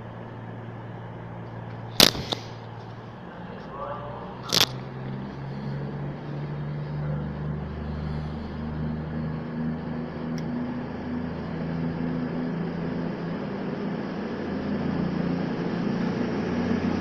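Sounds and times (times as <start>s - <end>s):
train diesel engines running: 0.0s - 17.0s.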